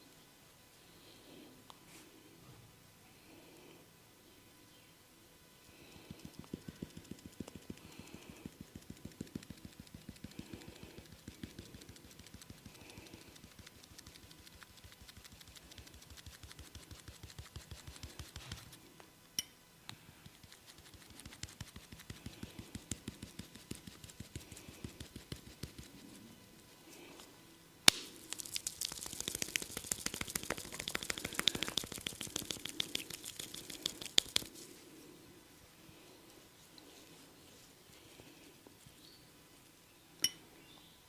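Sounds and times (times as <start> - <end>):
hands tapping on head: 6.1 - 18.6, 20.2 - 25.9, 27.9 - 34.5.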